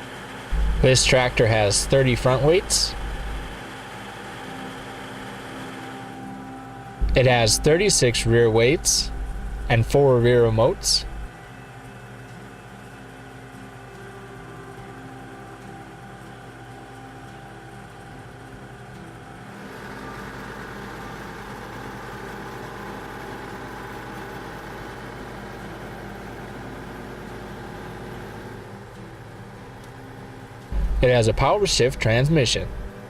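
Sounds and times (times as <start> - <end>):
tractor diesel engine running: 0.0 - 11.3, 30.7 - 33.0.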